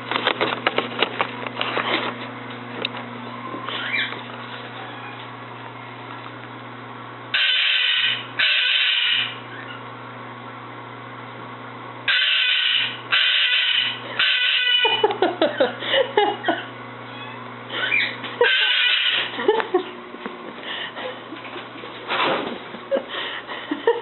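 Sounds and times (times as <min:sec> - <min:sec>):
low electrical hum: 0:00.0 - 0:24.0
cockatoo squawks: 0:03.7 - 0:04.1, 0:07.4 - 0:09.9, 0:12.1 - 0:15.0, 0:17.1 - 0:19.3
cockatoo screaming: 0:07.4 - 0:09.9, 0:12.1 - 0:15.0, 0:17.1 - 0:19.3.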